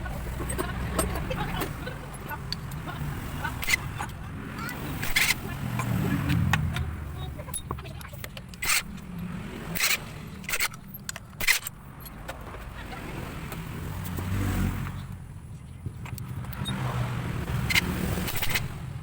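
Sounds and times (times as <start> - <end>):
low engine rumble: 0.0 - 19.0
tools clinking on metal: 4.6 - 12.4, 17.7 - 18.8.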